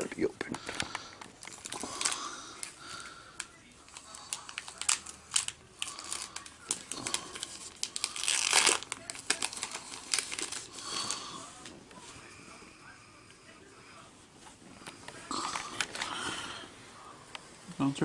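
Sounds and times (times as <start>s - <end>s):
foil wrapper crinkling and tearing: 0.6s - 11.7s, 15.2s - 16.6s.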